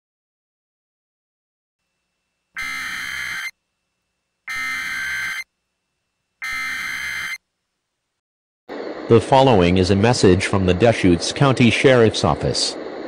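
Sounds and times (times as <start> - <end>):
buzzy digital data tones: 2.6 - 3.6, 4.5 - 5.5, 6.4 - 7.4.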